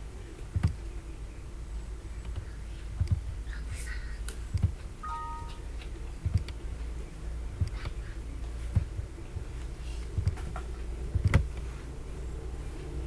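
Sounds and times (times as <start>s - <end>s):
low steady hum: 0.0s - 13.0s
computer mouse clicks: 0.6s - 0.8s, 2.2s - 3.2s, 6.2s - 6.6s, 10.2s - 10.4s, 11.2s - 11.7s
two-tone beep: 5.0s - 5.6s.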